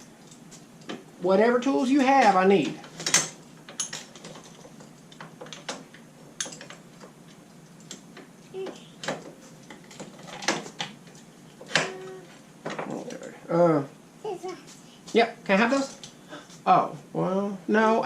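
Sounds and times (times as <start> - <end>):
metal tools clicking and clinking: 2.9 - 5.8, 6.4 - 6.8.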